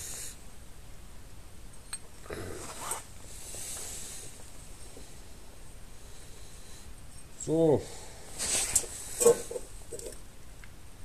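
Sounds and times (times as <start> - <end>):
soft hiss: 0.0 - 11.0
metallic scrape: 8.4 - 9.7.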